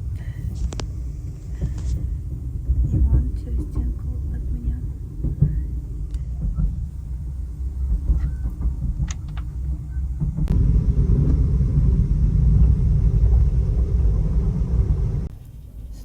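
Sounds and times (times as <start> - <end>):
train rumbling: 0.0 - 16.0.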